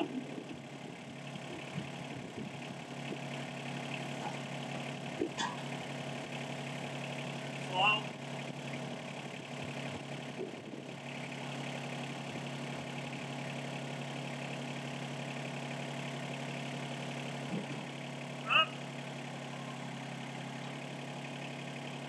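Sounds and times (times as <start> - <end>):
tractor diesel engine running: 0.0 - 22.0
loud voice-like call: 18.4 - 18.8.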